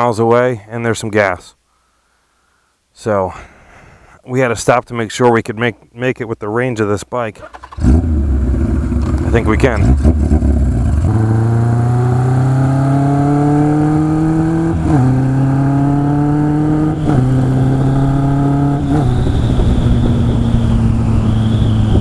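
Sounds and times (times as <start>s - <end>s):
motorcycle engine accelerating: 7.4s - 22.0s.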